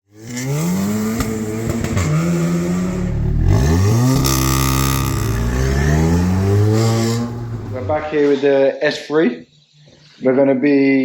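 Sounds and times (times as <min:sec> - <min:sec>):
car engine revving: 0:00.1 - 0:08.2
exhaust cracks: 0:00.1 - 0:08.3.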